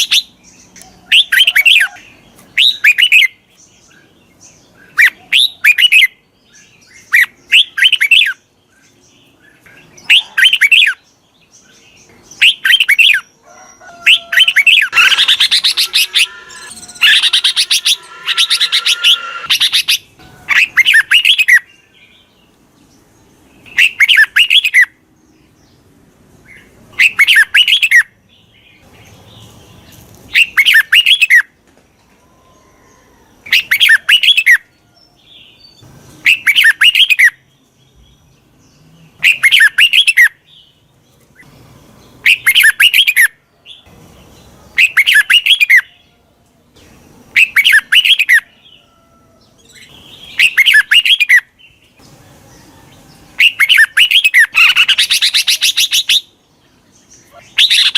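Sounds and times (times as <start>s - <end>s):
bird chattering calls: 13.9s - 21.7s, 53.4s - 56.3s, 57.2s - 57.9s.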